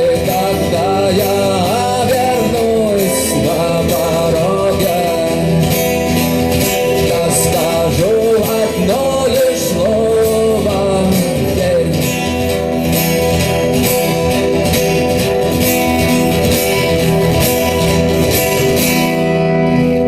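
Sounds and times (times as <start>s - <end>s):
man singing: 0.0s - 12.8s
acoustic guitar strumming: 0.0s - 20.0s.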